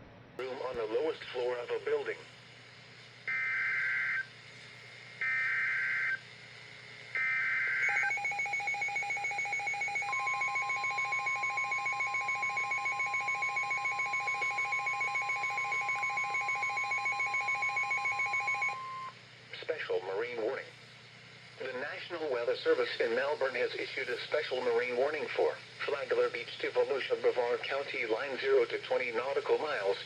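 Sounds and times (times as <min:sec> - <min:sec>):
steady warning alarm tone: 0:03.3 - 0:04.3, 0:05.2 - 0:06.2, 0:07.2 - 0:19.2
rapid beeping alert tone: 0:07.8 - 0:19.1
data tone bursts: 0:07.8 - 0:19.2.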